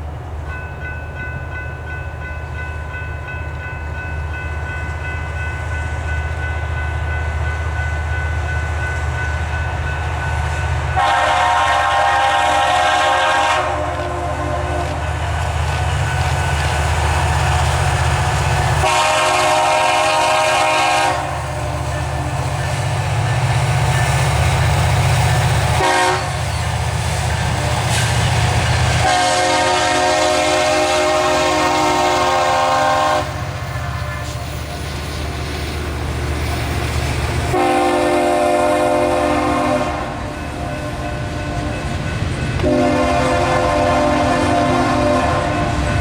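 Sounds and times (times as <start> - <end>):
locomotive engines rumbling: 0.0 - 46.0
train horn blasts: 10.8 - 15.4, 18.4 - 22.5, 25.6 - 26.8, 27.6 - 34.4, 37.5 - 42.0, 42.6 - 46.0.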